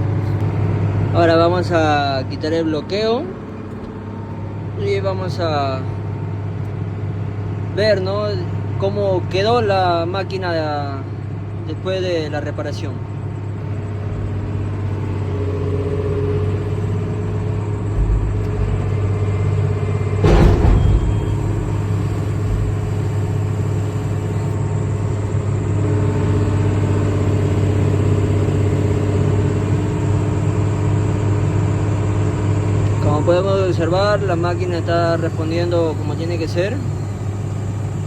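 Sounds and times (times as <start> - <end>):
excavator diesel engine running: 0.0 - 38.0
hydraulic whine: 12.9 - 38.0
sharp metal clank: 20.2 - 24.2.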